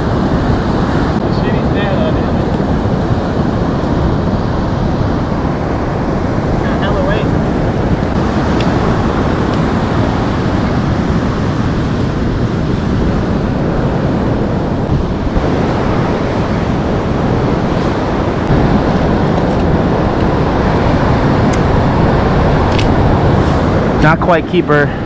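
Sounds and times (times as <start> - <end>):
ocean surf washing on beach: 0.0 - 25.0
wind on microphone: 0.0 - 25.0.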